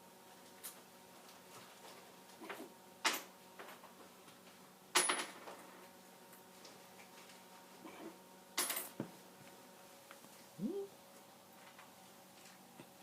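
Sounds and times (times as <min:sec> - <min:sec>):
dog hiccuping: 0:10.6 - 0:10.9.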